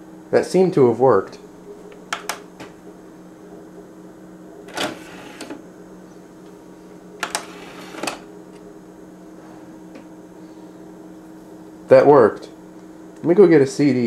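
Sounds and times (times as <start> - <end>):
steady low hum: 0.0 - 14.0
cd tray clicks: 1.9 - 2.7.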